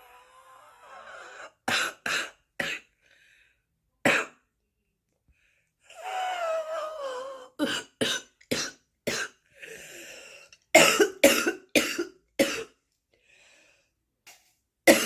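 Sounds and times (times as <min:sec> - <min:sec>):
woman coughing: 0:04.1 - 0:04.4, 0:07.6 - 0:09.4, 0:10.8 - 0:12.8
woman breathing in: 0:09.5 - 0:10.6, 0:13.1 - 0:14.0.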